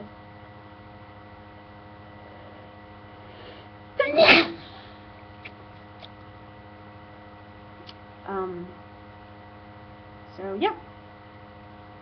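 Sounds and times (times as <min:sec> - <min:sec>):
electrical hum: 0:00.0 - 0:12.0
person sneezing: 0:04.0 - 0:05.0.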